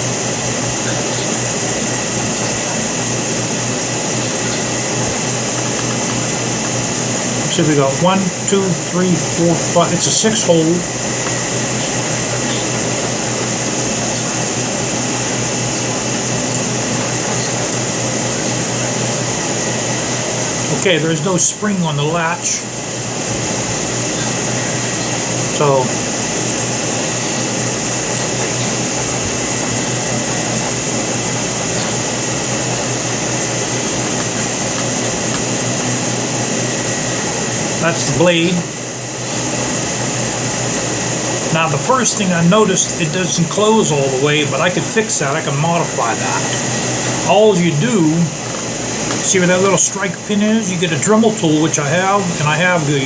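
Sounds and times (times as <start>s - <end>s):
low hum: 0.0s - 53.0s
steady whirring with hiss: 0.0s - 53.0s.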